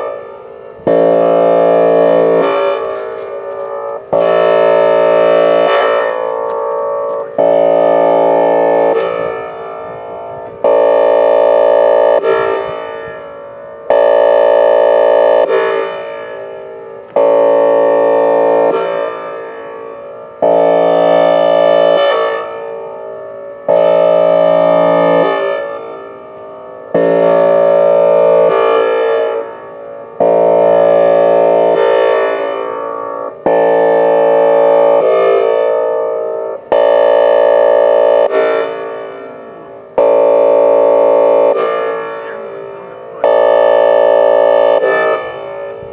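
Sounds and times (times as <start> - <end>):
warning siren horn tone: 0.0 - 45.9.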